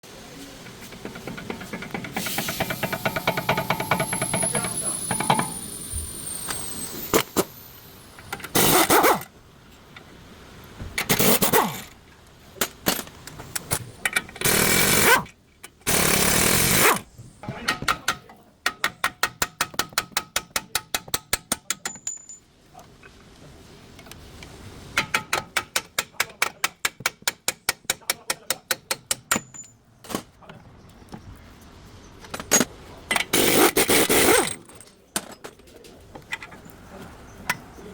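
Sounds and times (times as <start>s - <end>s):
power tool bursts: 2.1s - 9.3s, 11.1s - 11.9s, 14.4s - 15.3s, 15.9s - 17.1s, 33.3s - 34.7s
ratchet wrench clicking: 2.2s - 7.5s.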